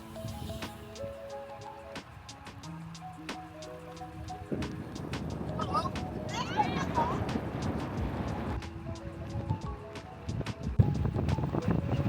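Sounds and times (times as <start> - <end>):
held melody notes: 0.0 - 7.0
light ticking percussion: 0.0 - 12.0
road noise: 0.0 - 12.0
wind: 0.0 - 12.0.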